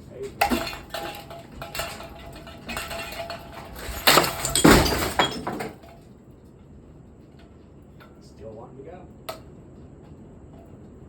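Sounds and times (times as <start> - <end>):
ceiling fan being smashed: 0.1 - 6.0.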